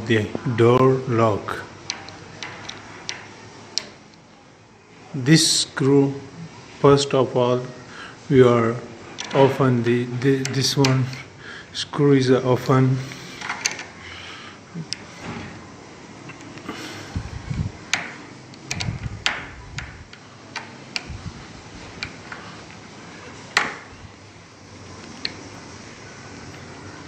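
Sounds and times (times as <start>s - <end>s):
metal door lock clicks: 17.9s - 21.1s.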